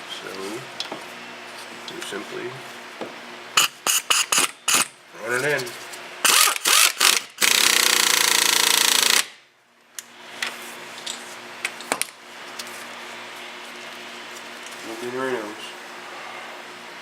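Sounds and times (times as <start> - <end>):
air tool running: 3.6 - 5.0, 6.2 - 9.4.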